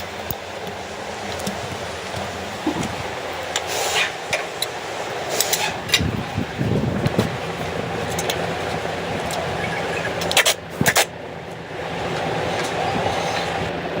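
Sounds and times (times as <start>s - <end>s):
car engine running: 0.0s - 13.7s.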